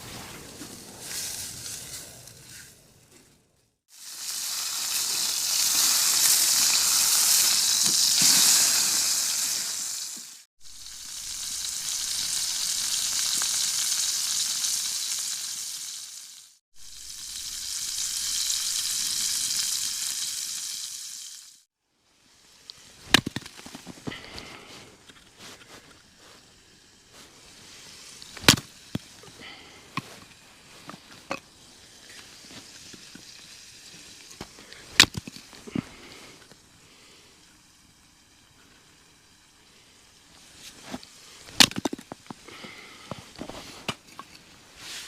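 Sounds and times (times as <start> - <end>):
steak sizzling in a skillet: 3.9 - 21.7, 31.6 - 35.0.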